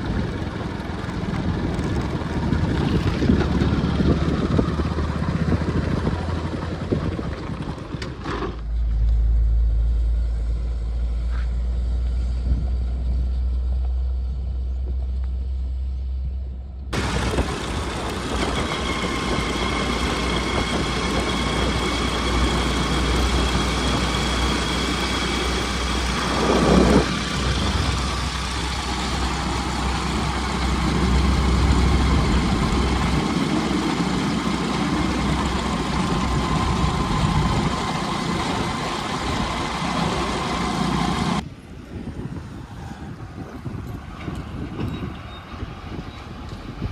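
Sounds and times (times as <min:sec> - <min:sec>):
diesel engine rumbling: 0:00.0 - 0:46.9
loud rush: 0:17.0 - 0:41.4.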